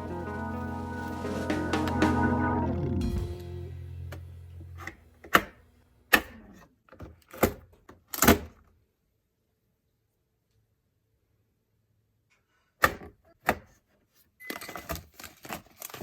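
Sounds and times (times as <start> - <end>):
background music: 0.0 - 4.5.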